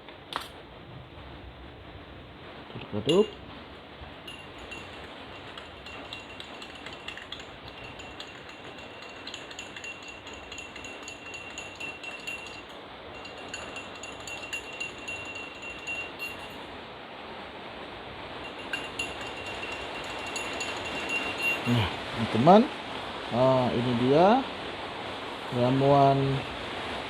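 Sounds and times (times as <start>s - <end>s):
spoon clinking in glass: 3.1s - 3.4s, 4.2s - 16.7s, 18.4s - 22.4s
glass ringing: 3.1s - 3.5s, 4.1s - 16.8s, 18.4s - 22.6s.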